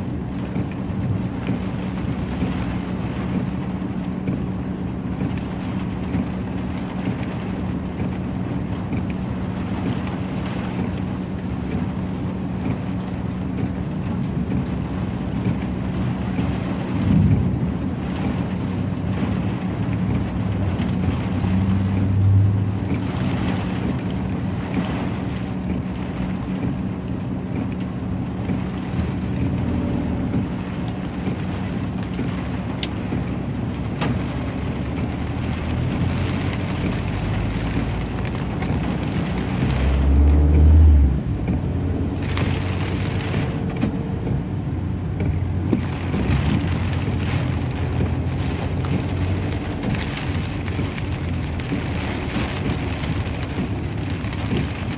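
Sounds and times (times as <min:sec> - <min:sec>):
heavy rain and hail: 0:00.0 - 0:54.9
low rumble: 0:16.6 - 0:24.3.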